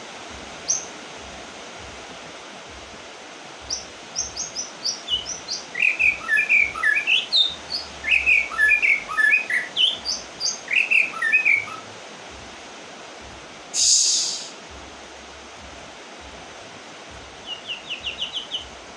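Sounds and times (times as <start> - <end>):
steady background hiss: 0.0 - 18.9
bird singing whistled notes: 0.6 - 0.9, 3.7 - 11.9, 13.8 - 14.6, 17.4 - 18.7.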